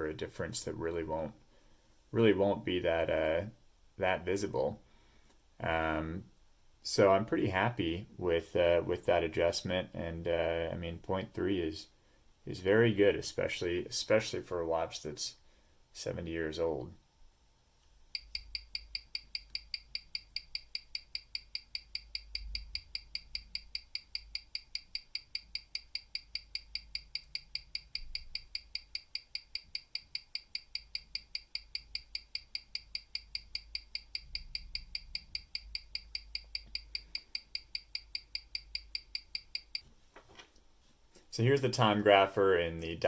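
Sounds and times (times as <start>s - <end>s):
watch ticking rapidly: 18.1s - 39.9s.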